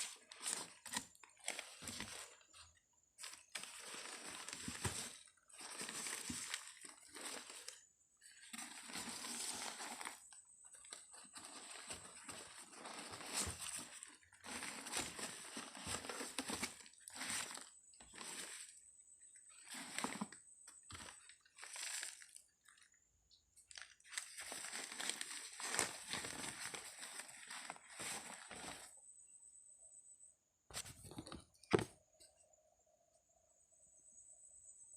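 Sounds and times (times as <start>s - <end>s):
packaging crinkling and rustling: 0.0s - 18.8s, 19.5s - 22.9s, 23.6s - 29.0s.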